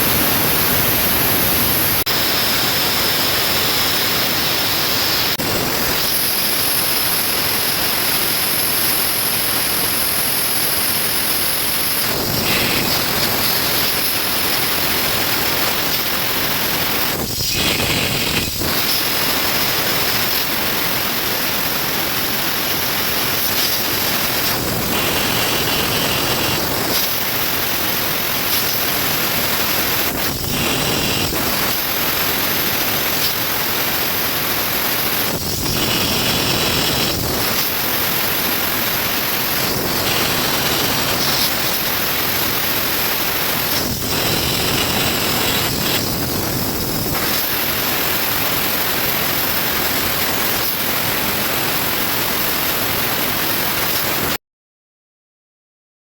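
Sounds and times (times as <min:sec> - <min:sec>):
spray gun hissing compressed gas: 0:10.8 - 0:48.0.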